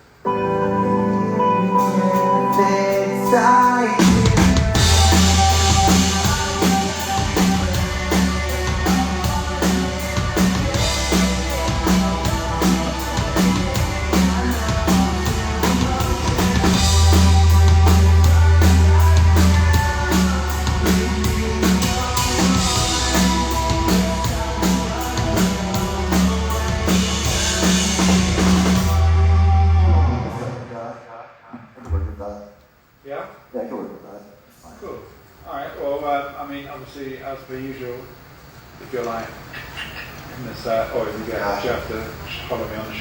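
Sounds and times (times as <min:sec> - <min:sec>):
rock band playing: 0:00.3 - 0:30.5
drum kit beat: 0:01.8 - 0:30.4.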